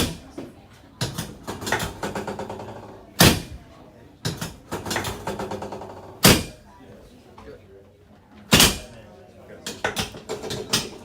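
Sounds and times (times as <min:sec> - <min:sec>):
rapid clicking and knocking: 0:01.0 - 0:03.6, 0:04.3 - 0:06.6
loud sharp thump: 0:03.2 - 0:03.6, 0:06.2 - 0:06.6, 0:08.5 - 0:08.9.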